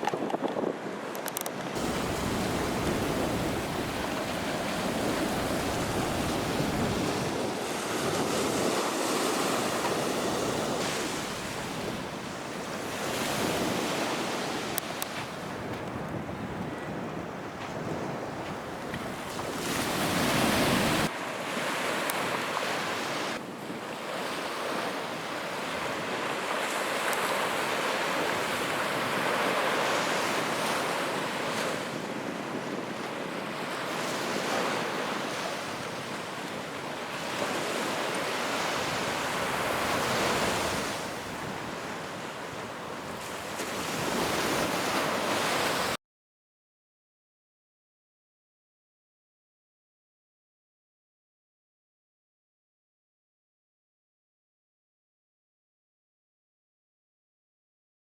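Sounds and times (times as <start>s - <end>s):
wind rumble on microphone: 0.0s - 21.1s
surf washing onto sand: 1.7s - 16.2s, 17.6s - 32.0s.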